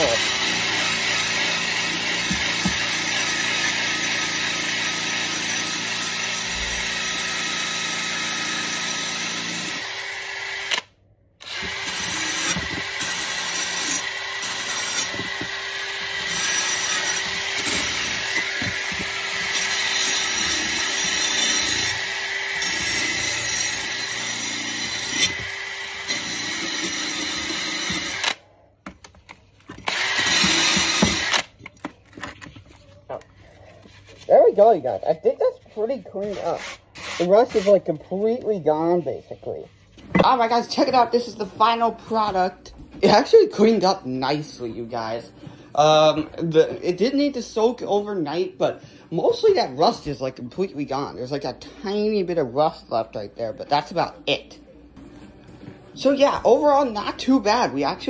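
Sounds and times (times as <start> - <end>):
power tool grinding metal: 0.0 - 10.8, 11.4 - 28.4, 29.9 - 31.5.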